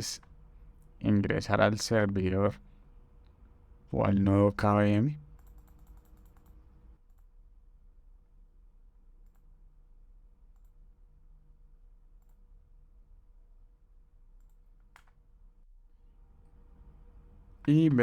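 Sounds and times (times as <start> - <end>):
faint steady hum: 0.0 - 18.0
faint computer clicks: 5.2 - 7.3, 9.2 - 9.6, 10.5 - 10.8, 12.2 - 12.5, 14.4 - 15.2.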